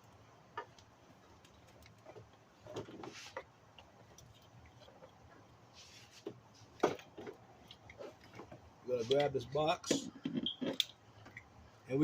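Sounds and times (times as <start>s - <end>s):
clicks and rattles of engine parts: 6.2s - 11.5s.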